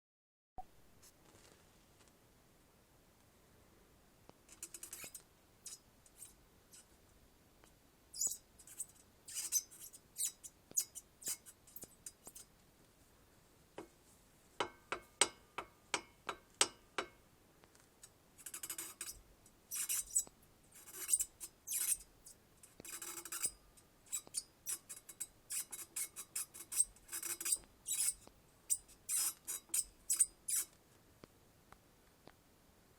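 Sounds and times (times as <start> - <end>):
universal joint squeaking: 4.6 - 6.3, 8.2 - 12.4, 18.5 - 22.1, 22.8 - 30.7.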